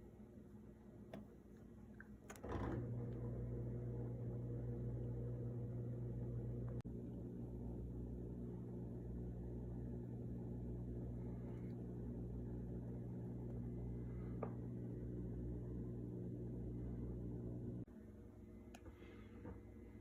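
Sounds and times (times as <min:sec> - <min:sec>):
dishwasher motor humming: 0:02.1 - 0:17.9.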